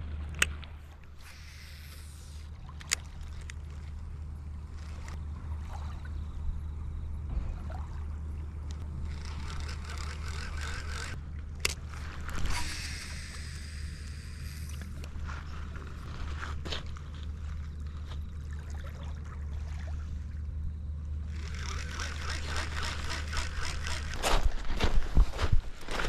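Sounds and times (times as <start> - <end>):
sharp clicks: 8.7 - 15.0
wind rumble on microphone: 24.1 - 26.0.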